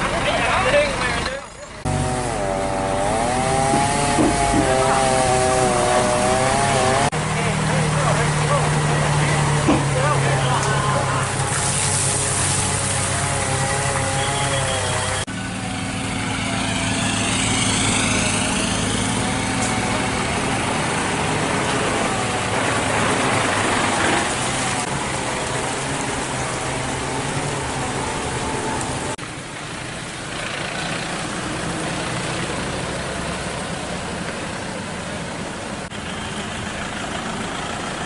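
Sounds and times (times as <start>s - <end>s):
vehicle engines idling: 0.0s - 38.0s.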